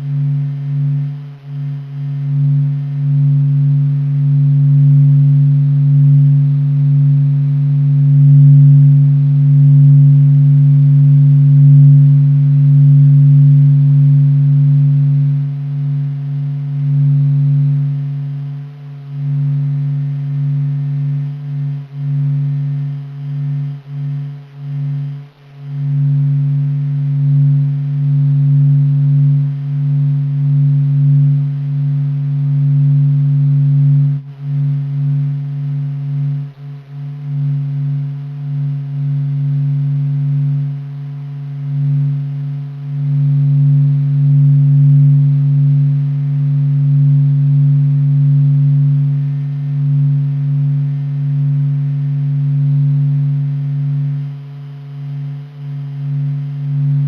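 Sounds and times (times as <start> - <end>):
deep humming drone: 0.0 - 57.0.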